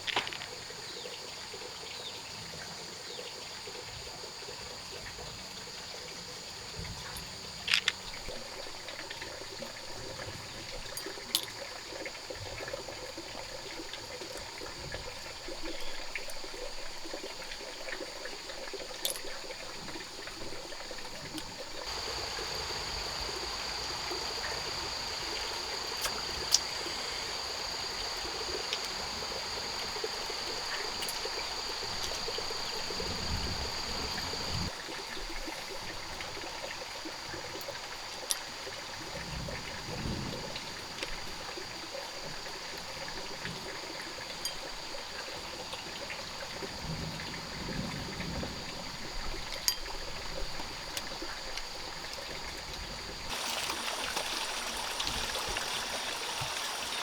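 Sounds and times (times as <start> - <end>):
water trickling: 3.0 - 47.9, 49.1 - 57.0
high-pitched whine: 21.9 - 34.7.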